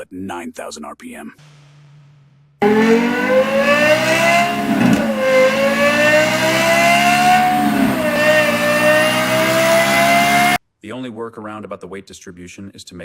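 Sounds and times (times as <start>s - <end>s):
car engine accelerating hard: 2.6s - 10.6s.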